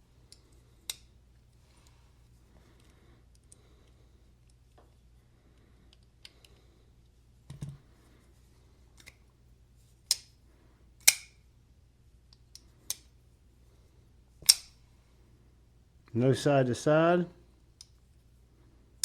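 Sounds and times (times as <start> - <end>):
folding knife blade clicking: 11.0 - 11.4, 14.4 - 14.7.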